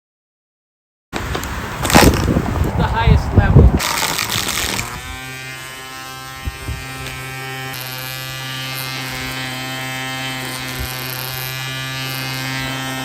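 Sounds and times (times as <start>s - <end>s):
electric string trimmer running: 3.7s - 13.0s.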